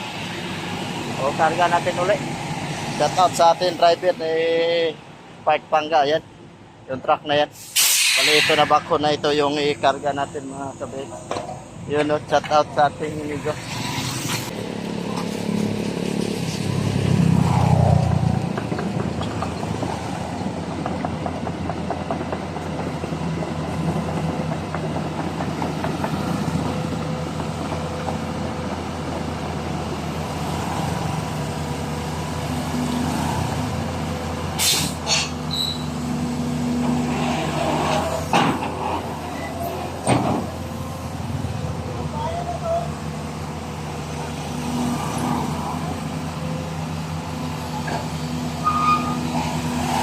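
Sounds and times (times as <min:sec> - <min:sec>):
backhoe engine running: 0:18.3 - 0:30.6.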